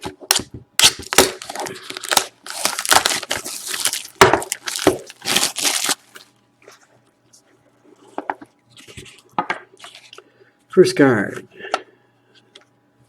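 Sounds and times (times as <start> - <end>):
plastic and cardboard tearing: 0.0 - 6.3.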